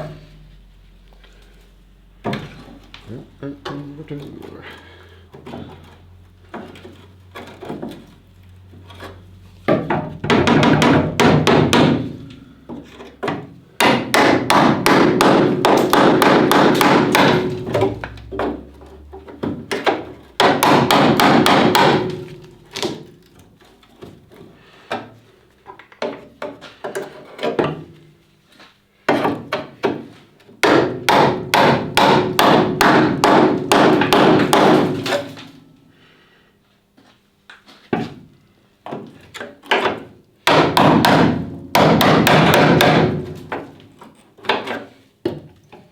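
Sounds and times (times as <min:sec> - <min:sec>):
rapid hammering on sheet metal: 0:09.7 - 0:12.4, 0:13.3 - 0:18.6, 0:19.7 - 0:23.0, 0:30.6 - 0:35.4, 0:40.4 - 0:43.8.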